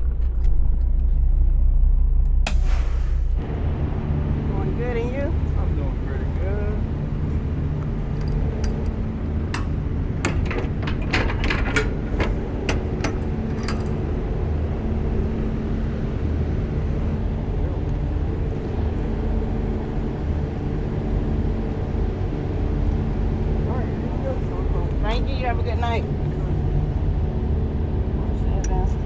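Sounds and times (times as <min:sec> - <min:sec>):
diesel truck engine running: 0:00.0 - 0:29.0
sharp clicks and rattles: 0:07.7 - 0:14.6.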